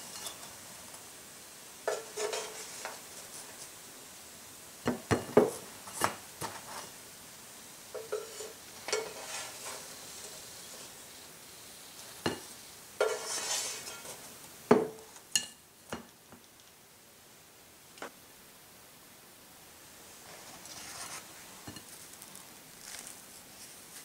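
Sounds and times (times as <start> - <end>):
utensils clinking on dishes: 0.0 - 0.6, 1.9 - 3.0, 8.0 - 10.4, 12.2 - 16.0.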